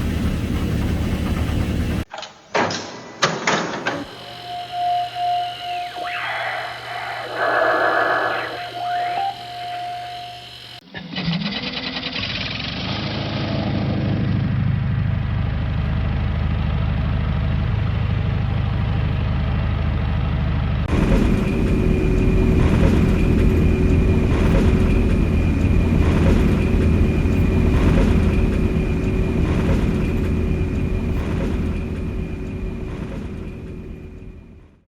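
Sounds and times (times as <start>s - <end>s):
metallic drone with steady tones: 4.1s - 10.8s, 20.9s - 34.6s
regular pulse: 4.1s - 10.8s
low engine-like rumble drone: 4.2s - 10.8s, 13.3s - 34.8s.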